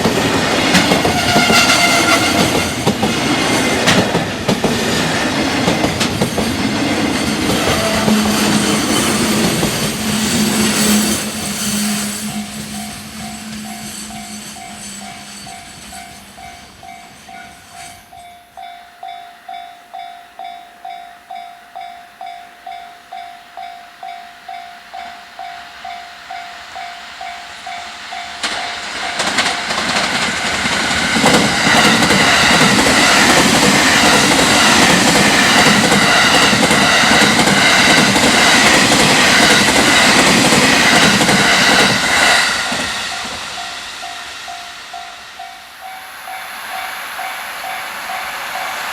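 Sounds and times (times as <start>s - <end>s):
freight train passing: 0.0s - 48.9s
level-crossing warning bell: 4.5s - 48.9s
wagons clattering over rail joints: 28.4s - 42.0s.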